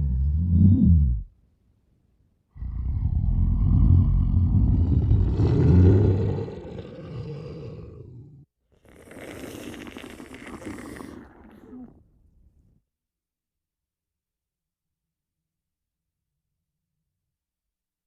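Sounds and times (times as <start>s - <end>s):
low monster growl: 0.0s - 1.3s, 2.6s - 8.4s
faint hissy growl: 2.5s - 12.2s.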